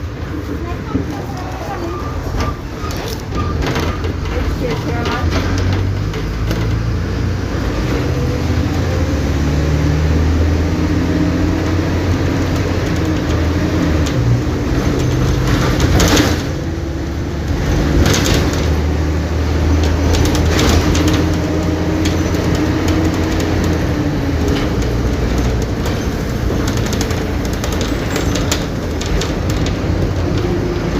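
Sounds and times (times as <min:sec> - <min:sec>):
bus diesel engine drone: 0:00.0 - 0:30.9
sharp clacks: 0:19.8 - 0:30.9.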